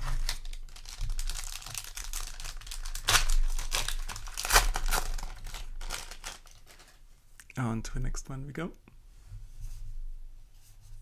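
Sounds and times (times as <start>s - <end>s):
foil wrapper crinkling and tearing: 0.0s - 7.0s.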